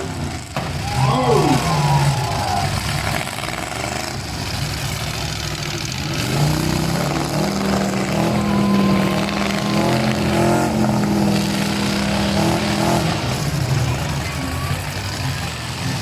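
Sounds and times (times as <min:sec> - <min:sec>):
truck engines running: 0:00.0 - 0:16.0
engine revving high: 0:05.9 - 0:16.0.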